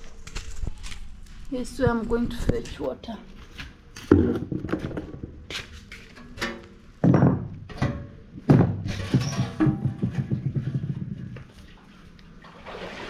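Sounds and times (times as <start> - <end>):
heavy thunks and scrapes: 7.0 - 11.6.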